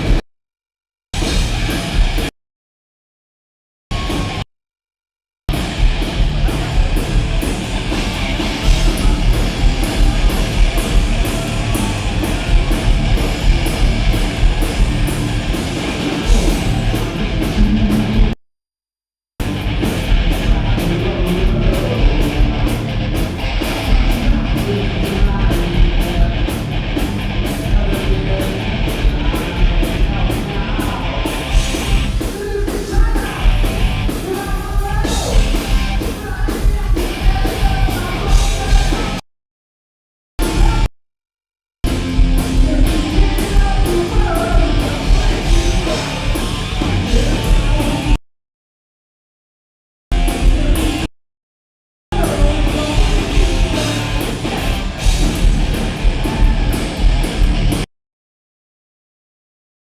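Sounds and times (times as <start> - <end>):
heavy metal band playing live: 1.2 - 2.3, 4.0 - 4.4, 5.5 - 18.3, 19.4 - 39.2, 40.4 - 40.9, 41.8 - 48.2, 50.1 - 51.1, 52.2 - 57.8.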